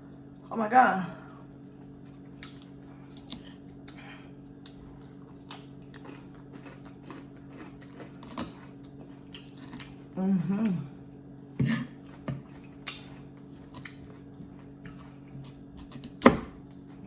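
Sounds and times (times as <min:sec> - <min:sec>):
steady low hum: 0:00.0 - 0:17.0
person chewing meat: 0:01.5 - 0:17.0.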